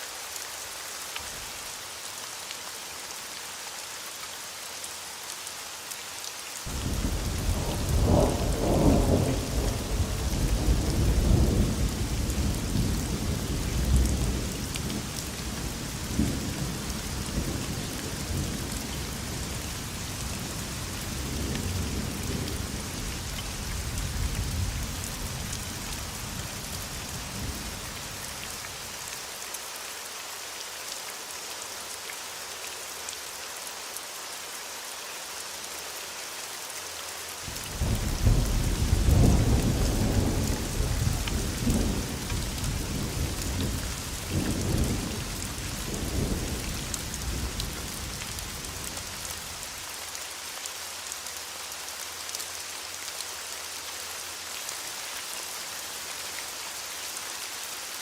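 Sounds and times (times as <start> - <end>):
steady rain hiss: 0.0 - 58.0
thunder rumbles: 6.7 - 18.6, 37.5 - 48.0.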